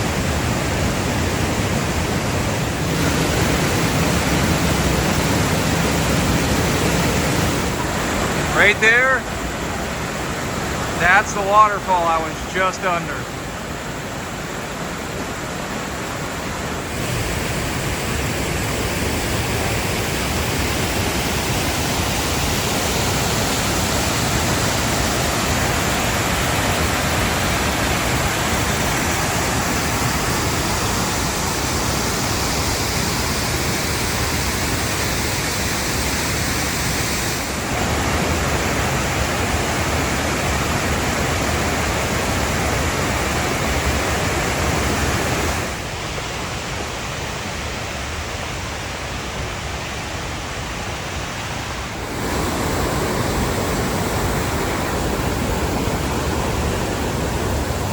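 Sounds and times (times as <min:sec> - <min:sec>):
waterfall rushing: 0:00.0 - 0:57.9.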